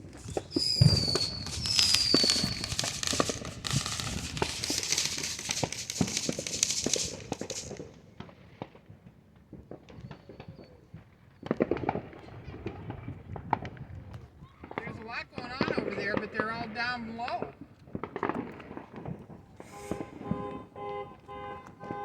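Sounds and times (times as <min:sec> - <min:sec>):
firework boom: 0:00.0 - 0:07.7
firework whistles: 0:00.0 - 0:08.0, 0:09.8 - 0:12.0, 0:18.0 - 0:22.0
fireworks crackling and popping: 0:00.0 - 0:22.0.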